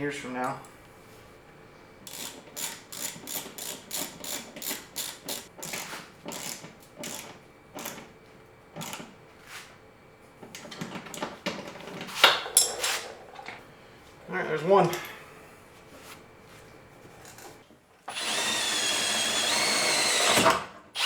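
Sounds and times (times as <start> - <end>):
hand ratchet clicking: 2.0 - 8.0.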